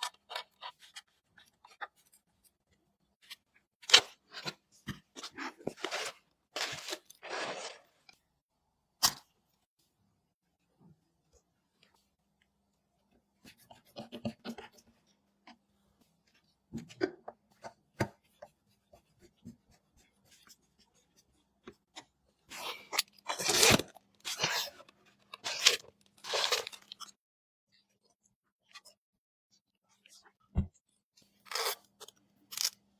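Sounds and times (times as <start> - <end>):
loud rustling and crinkling: 5.4 - 8.0.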